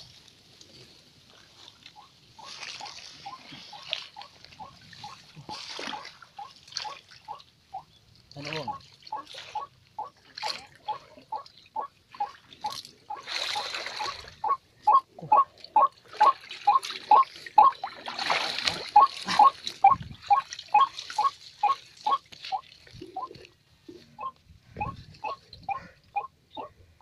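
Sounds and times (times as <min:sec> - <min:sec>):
water sloshing and splashing: 0:00.0 - 0:26.4
waterhen calling: 0:01.6 - 0:27.0.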